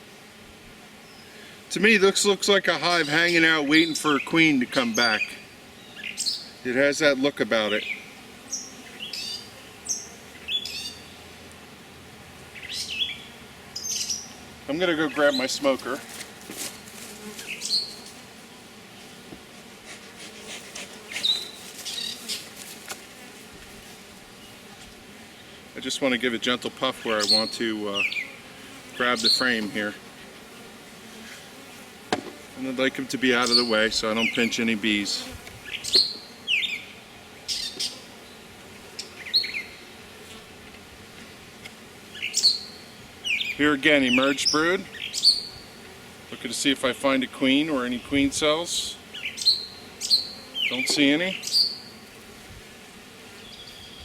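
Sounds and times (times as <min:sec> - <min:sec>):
bees buzzing: 0:00.0 - 0:54.0
scratchy rustling and handling: 0:15.4 - 0:18.2, 0:19.0 - 0:24.9
bird chirping: 0:17.4 - 0:18.0, 0:42.2 - 0:45.6, 0:49.1 - 0:52.0, 0:53.4 - 0:54.0.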